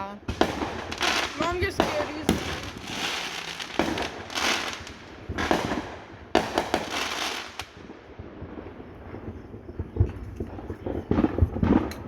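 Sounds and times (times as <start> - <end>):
fireworks bangs: 0.0 - 12.0
fireworks crackling: 0.0 - 12.0.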